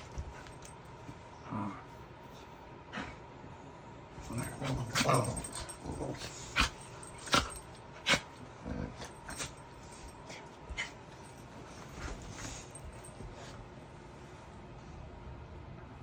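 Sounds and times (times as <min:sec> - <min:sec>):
puppies play-growling: 0:04.2 - 0:13.6.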